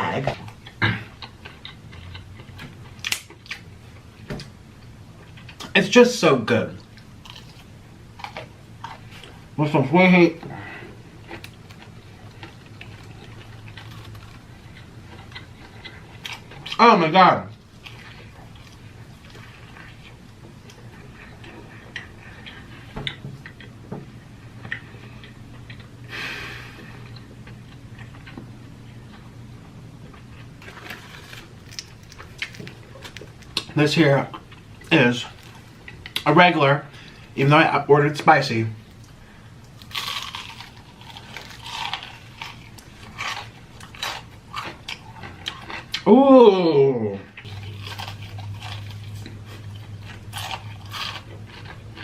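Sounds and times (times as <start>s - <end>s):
person chewing: 0.0s - 4.5s, 6.8s - 9.5s, 10.4s - 16.8s, 17.5s - 23.8s, 24.6s - 29.3s, 30.0s - 36.2s, 38.9s - 52.0s
faint low hum: 0.0s - 52.0s
crunching fried chicken: 0.2s - 4.0s, 6.7s - 10.3s, 11.1s - 23.7s, 30.1s - 37.6s, 38.3s - 46.7s, 47.4s - 52.0s.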